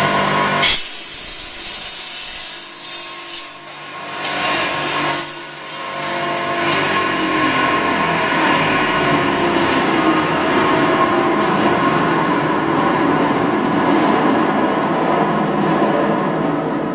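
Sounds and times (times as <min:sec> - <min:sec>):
roll forming machine rumble: 0:05.9 - 0:16.9.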